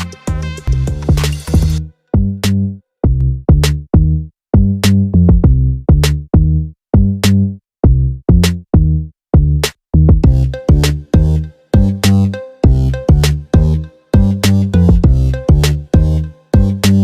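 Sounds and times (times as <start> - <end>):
electronic beat music: 0.0 - 2.5, 10.2 - 17.0.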